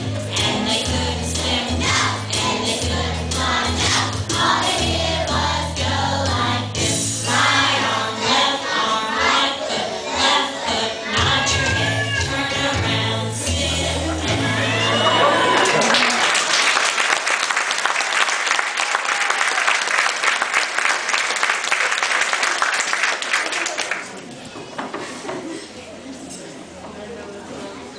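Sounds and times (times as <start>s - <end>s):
group of voices singing: 0.0s - 15.5s
instrumental backing with bass: 11.3s - 15.3s.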